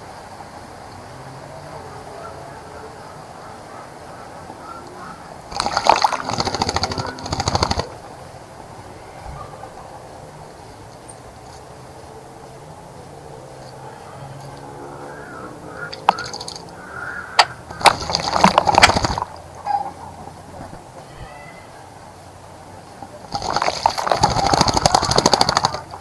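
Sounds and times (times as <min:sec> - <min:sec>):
bird splashing in water: 0:04.6 - 0:08.9, 0:15.0 - 0:19.6, 0:23.3 - 0:26.0.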